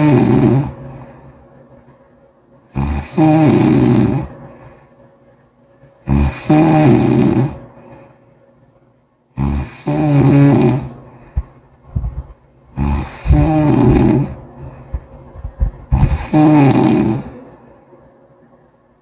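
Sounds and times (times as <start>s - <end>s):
person snoring loudly: 0.0s - 0.8s, 2.7s - 4.3s, 6.0s - 7.6s, 9.4s - 11.0s, 12.7s - 14.4s, 15.9s - 17.5s
quiet breathing: 0.0s - 18.3s.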